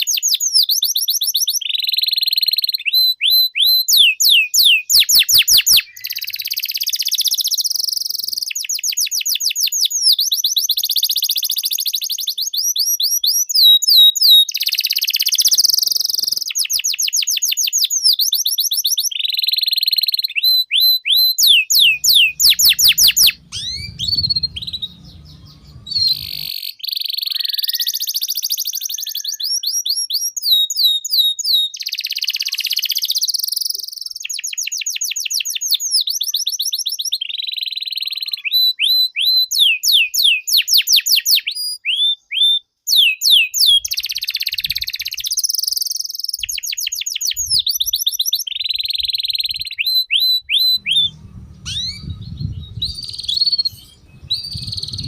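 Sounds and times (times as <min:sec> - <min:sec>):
canary singing trills: 0:02.3 - 0:08.4, 0:21.2 - 0:29.7, 0:47.3 - 0:55.0.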